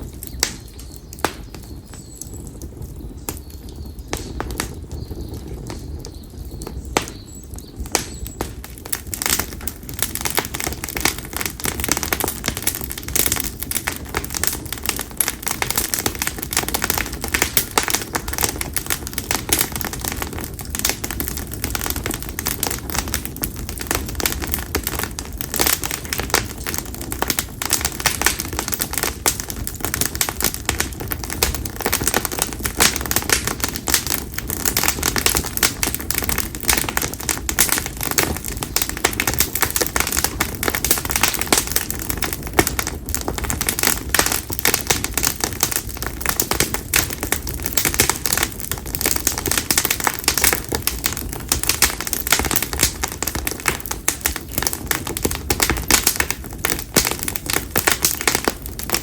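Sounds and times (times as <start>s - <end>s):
campfire crackling and popping: 0.0s - 59.0s.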